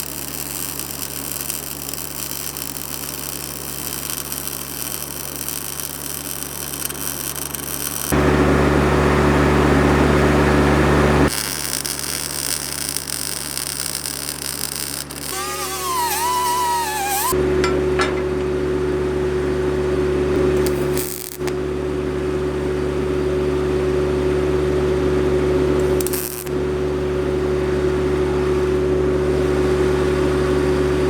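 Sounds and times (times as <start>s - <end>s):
welding arc crackling hiss: 0.0s - 8.2s, 11.3s - 18.5s, 20.6s - 21.5s, 25.8s - 26.5s.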